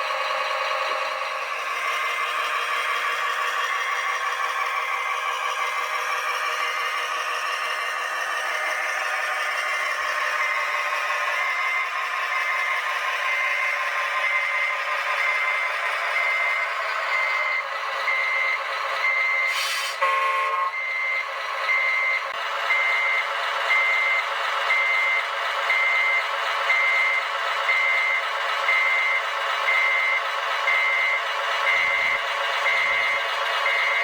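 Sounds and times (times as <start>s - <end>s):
simulated diesel engine sound: 0.0s - 34.0s
reversing beeper: 7.8s - 34.0s
brief hiss: 19.5s - 20.0s.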